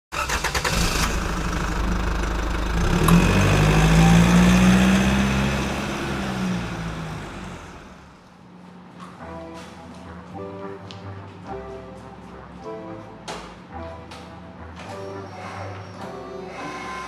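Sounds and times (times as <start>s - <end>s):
vehicle engine running: 0.2s - 8.2s.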